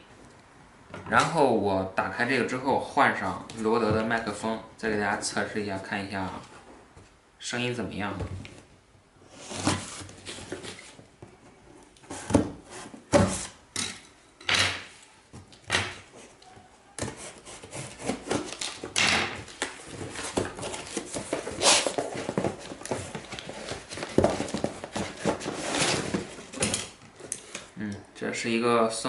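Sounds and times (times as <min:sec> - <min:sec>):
packaging rustling: 0:17.1 - 0:27.6.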